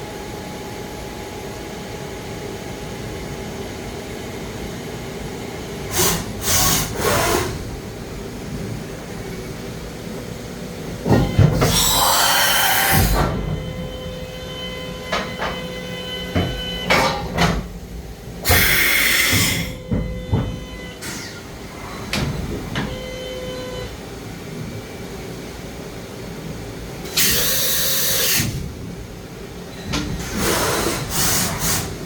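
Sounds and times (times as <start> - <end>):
machine steady whine: 0.0 - 32.0
air hiss bursts: 5.9 - 7.6, 11.6 - 13.3, 18.4 - 19.8, 27.2 - 28.6, 30.2 - 32.0
mechanical clunks and clicks: 11.0 - 11.8, 12.9 - 17.8, 18.4 - 21.4, 22.0 - 23.8.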